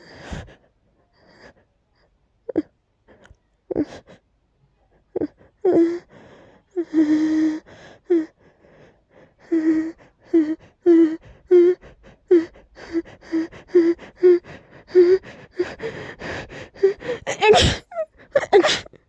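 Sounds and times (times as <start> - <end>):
person gasping before sneeze: 16.9 - 18.9
person sneezing loudly: 17.2 - 18.9.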